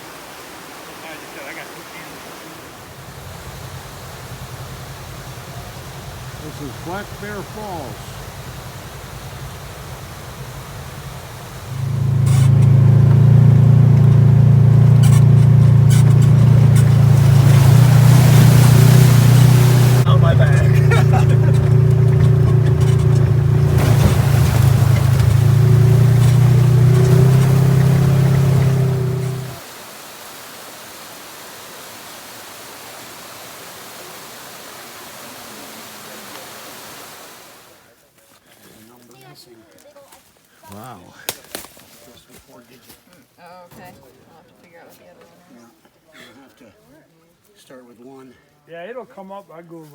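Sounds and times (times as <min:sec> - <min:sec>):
waterfall rushing: 0:00.0 - 0:37.7
vehicle engine humming: 0:02.8 - 0:29.6
sharp clicks and rattles: 0:03.2 - 0:29.6.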